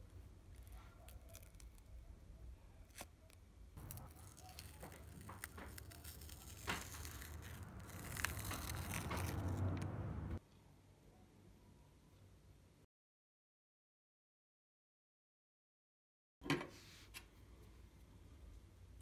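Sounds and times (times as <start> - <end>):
rustling: 2.8 - 10.4.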